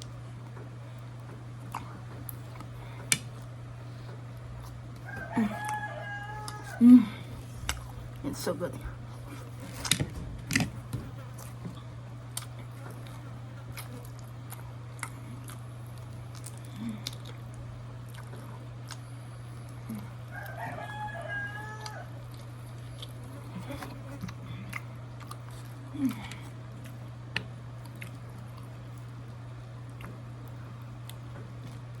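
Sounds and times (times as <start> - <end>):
steady low hum: 0.0 - 32.0
rooster crowing: 5.0 - 7.2, 20.3 - 22.2
clicks and taps of eating: 26.3 - 28.6.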